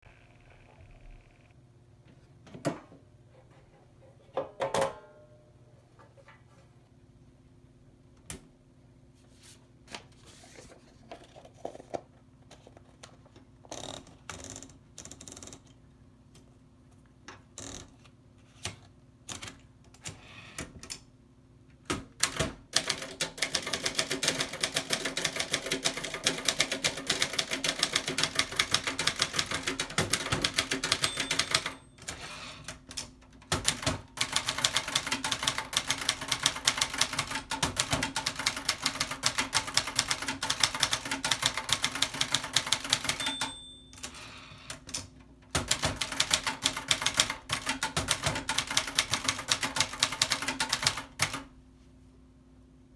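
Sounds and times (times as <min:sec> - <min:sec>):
typewriter clicks: 0:21.9 - 0:51.5
typewriter keys clacking: 0:22.2 - 0:51.4.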